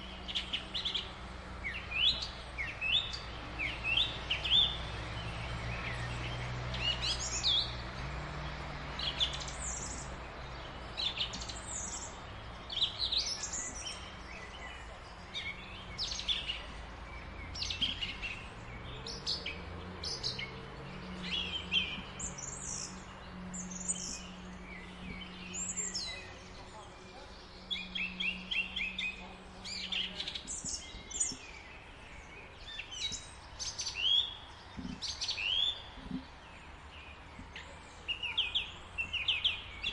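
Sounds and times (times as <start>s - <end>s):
small birds chirping: 0.0s - 39.9s.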